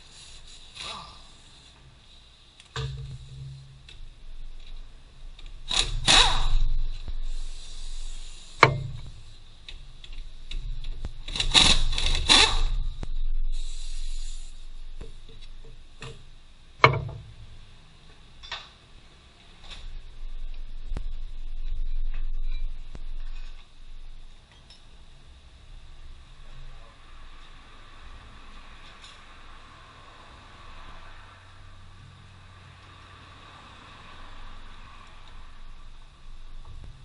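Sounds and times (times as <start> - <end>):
rapid tool rattle: 11.2 - 12.8
sharp metal knocks: 16.8 - 17.6
metal scraping: 19.8 - 24.2.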